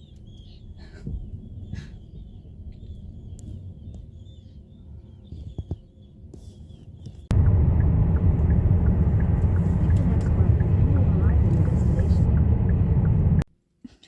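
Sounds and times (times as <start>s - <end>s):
low rumble: 0.0s - 5.2s, 7.3s - 13.5s
birds chattering: 0.0s - 7.3s
loud low rumble: 7.3s - 13.5s.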